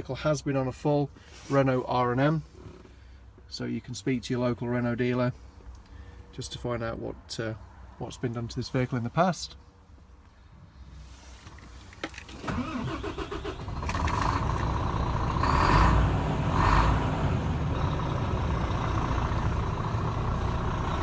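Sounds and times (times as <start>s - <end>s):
diesel truck engine starting and idling: 12.2s - 21.0s.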